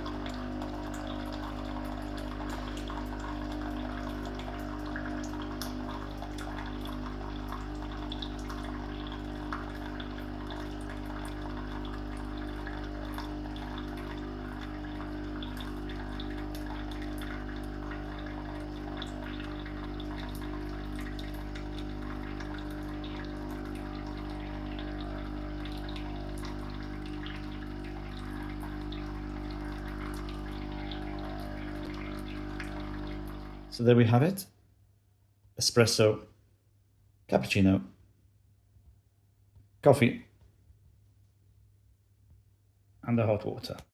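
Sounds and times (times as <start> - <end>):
water pouring into cup: 0.0 - 33.9
coffee machine pump humming: 0.0 - 34.4.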